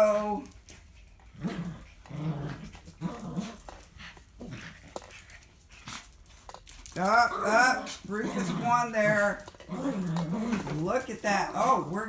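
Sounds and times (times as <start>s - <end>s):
dogs growling: 0.0s - 12.0s
sharp clicks and scuffs: 2.7s - 7.2s.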